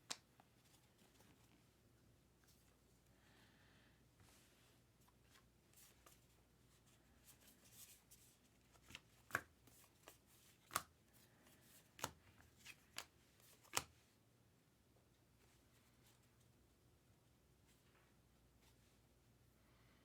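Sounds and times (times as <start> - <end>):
cards rustling: 7.2 - 14.0.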